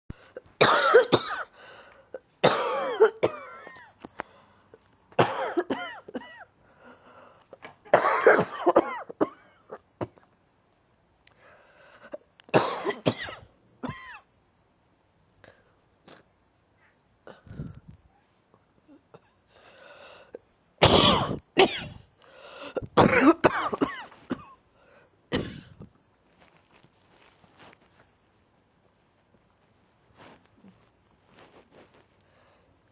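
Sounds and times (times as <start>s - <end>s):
person coughing harshly: 0.6s - 1.5s, 2.2s - 4.0s, 5.2s - 6.5s, 7.9s - 10.3s, 12.1s - 14.3s, 20.8s - 24.6s, 25.3s - 25.8s
person breathing in: 17.3s - 18.0s.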